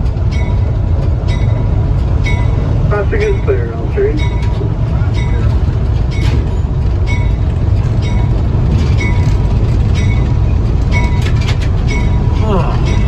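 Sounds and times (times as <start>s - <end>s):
train car rumbling on track: 0.0s - 13.0s
squeaky clack of wheels: 4.2s - 13.0s.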